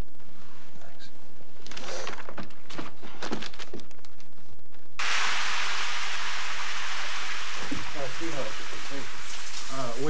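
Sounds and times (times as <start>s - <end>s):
loud steady hiss: 5.0s - 10.0s.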